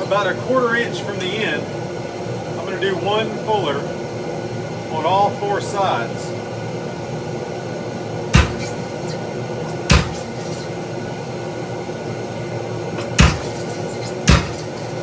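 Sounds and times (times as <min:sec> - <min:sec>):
steady background hum: 0:00.0 - 0:15.0
hammer blows on hot steel: 0:08.4 - 0:10.8, 0:13.0 - 0:15.0.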